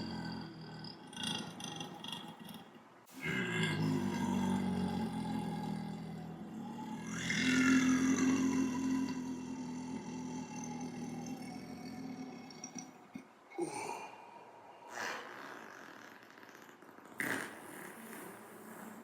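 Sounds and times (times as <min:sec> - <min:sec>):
man belching: 0:00.0 - 0:14.2.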